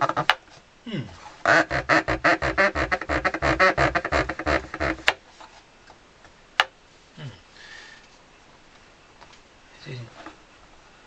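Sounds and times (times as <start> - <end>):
cloth rubbing accordion keys: 1.5 - 5.1.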